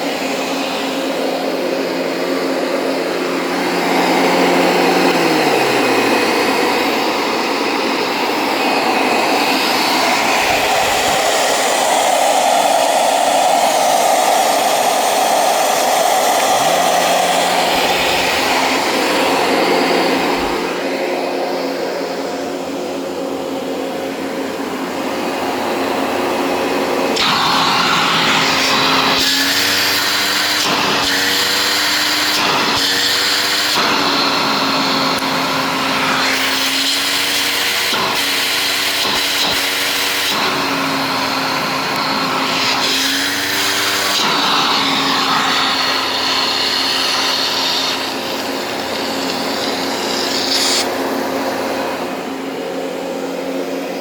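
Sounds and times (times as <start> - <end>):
vacuum cleaner motor hum: 0.0 - 54.0
rush of air: 8.2 - 21.2.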